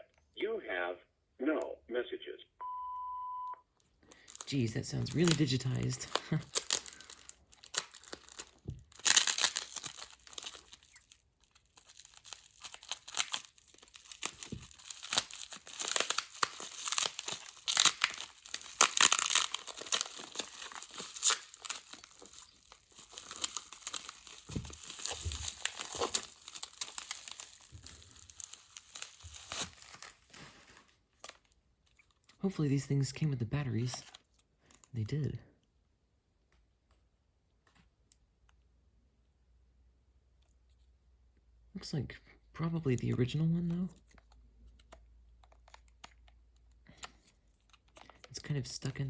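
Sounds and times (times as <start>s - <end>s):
plastic packaging crinkling and tearing: 4.1s - 32.3s, 42.9s - 49.0s.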